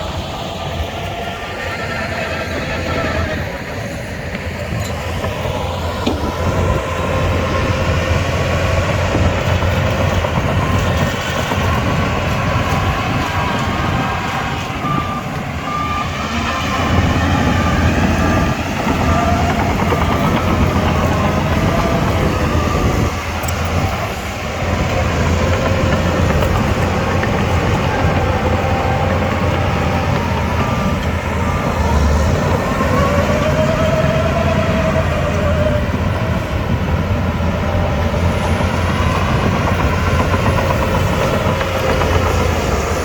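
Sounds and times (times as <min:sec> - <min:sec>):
bulldozer diesel engine rumbling: 0:00.0 - 0:43.0
reversing alarm beeping: 0:00.6 - 0:35.6.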